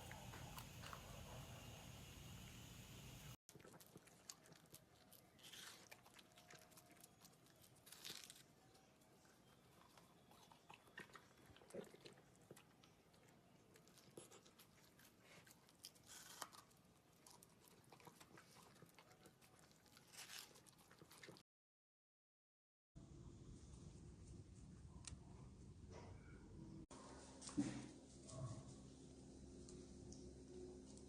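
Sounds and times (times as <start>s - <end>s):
dog chewing food: 0.0s - 1.6s, 3.5s - 8.3s, 9.4s - 21.4s.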